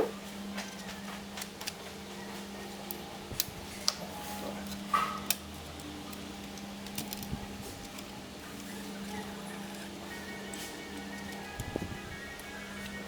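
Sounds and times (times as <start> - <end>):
plastic parts clicking and tapping: 4.7 - 9.8.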